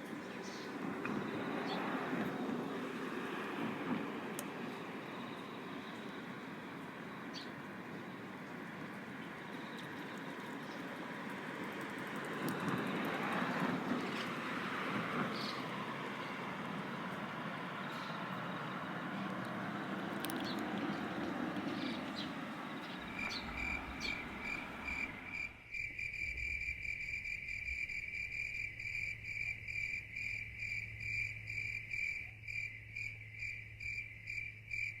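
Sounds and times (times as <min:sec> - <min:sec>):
rushing noise: 0:22.4 - 0:25.6
insect pulsing chirp: 0:22.7 - 0:35.0.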